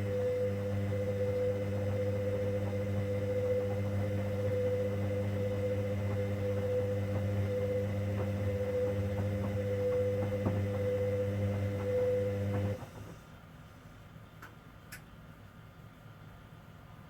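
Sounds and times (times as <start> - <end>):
washing machine humming: 0.0 - 13.6.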